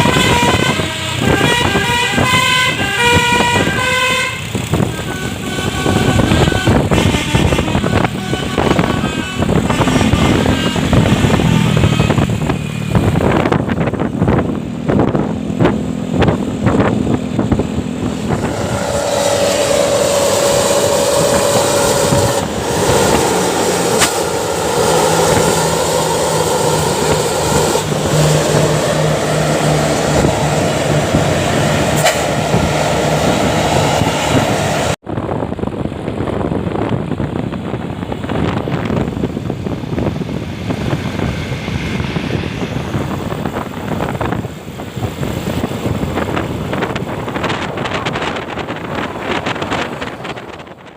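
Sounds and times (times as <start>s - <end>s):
traffic moving: 0.0s - 50.9s
steady whine: 15.5s - 35.0s.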